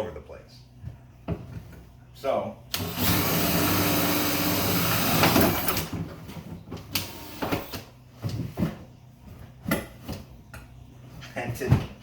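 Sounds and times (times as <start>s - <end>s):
power drill against plastic bucket: 2.7s - 6.0s, 6.9s - 7.8s.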